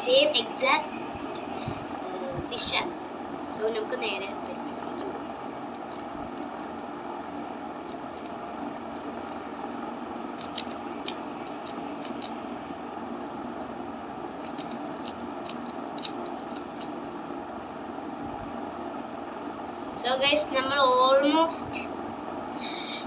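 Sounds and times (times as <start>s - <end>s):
plastic cube clicking: 10.4s - 12.3s, 14.4s - 16.9s.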